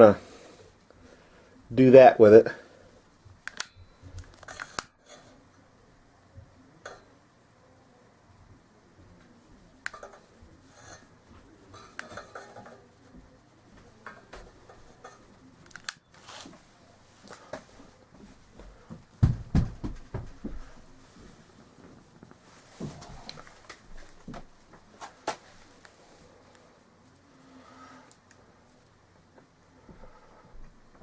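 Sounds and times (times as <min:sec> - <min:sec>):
dull thumps: 0:18.6 - 0:20.8.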